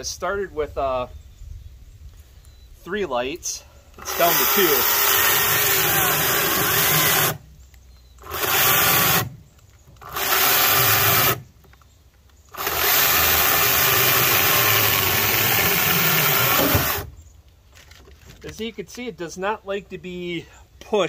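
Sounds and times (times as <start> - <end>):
battery chainsaw cutting wood: 4.0 - 7.5, 8.2 - 11.5, 12.5 - 17.1.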